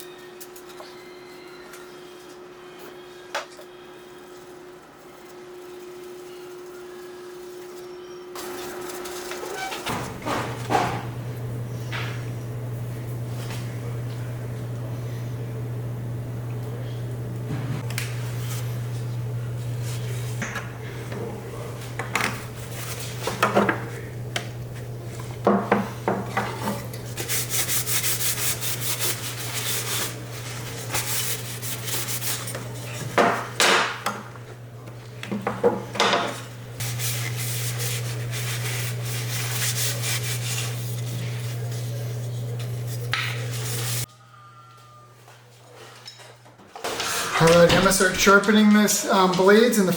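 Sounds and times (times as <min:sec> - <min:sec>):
steady low hum: 0:09.9 - 0:33.6
fast rubbing strokes: 0:27.2 - 0:30.2.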